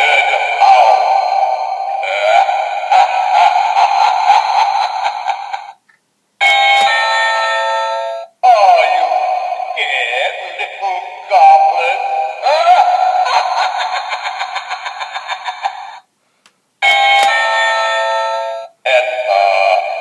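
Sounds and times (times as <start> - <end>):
electronic spooky voice effects: 0.0 - 5.8, 8.4 - 16.0, 18.8 - 20.0
doorbell chime: 6.4 - 9.8, 16.8 - 20.0.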